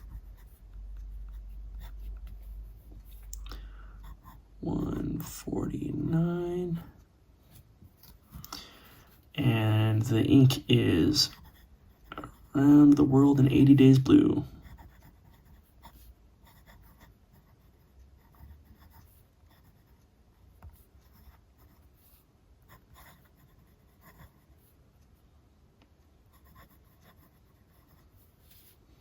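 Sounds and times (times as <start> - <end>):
fountain pen scratching on paper: 0.0 - 3.3, 11.1 - 20.0, 20.6 - 24.7, 26.3 - 28.8.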